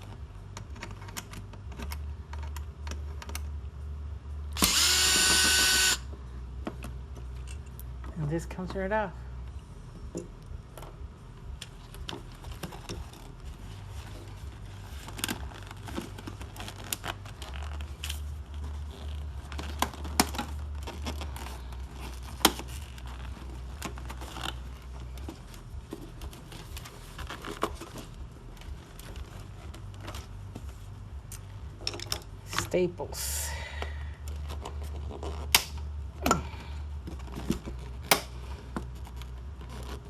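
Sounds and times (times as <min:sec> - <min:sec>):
clicks and scrapes of prying: 0:34.3 - 0:40.0.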